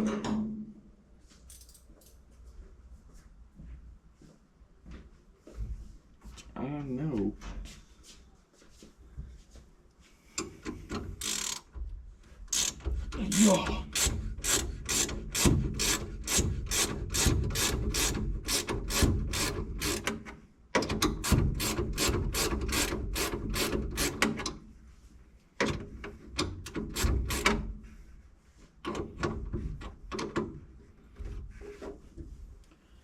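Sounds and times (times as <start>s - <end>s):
ratchet wrench clicking: 11.2s - 11.7s, 12.5s - 20.0s.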